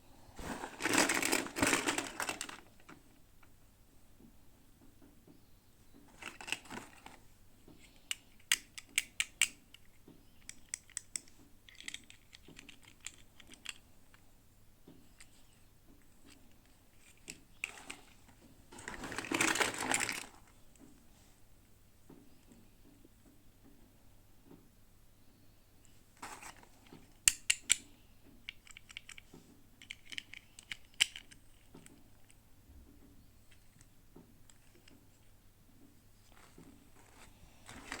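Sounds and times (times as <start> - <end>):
packaging crinkling: 0.3 - 3.0, 18.7 - 20.4, 36.3 - 38.0
plastic pieces clicking: 8.1 - 13.8, 28.4 - 29.2, 29.8 - 32.4.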